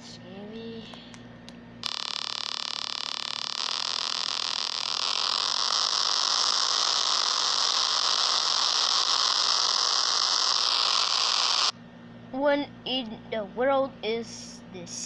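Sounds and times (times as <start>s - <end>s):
loud static hiss: 1.8s - 11.7s.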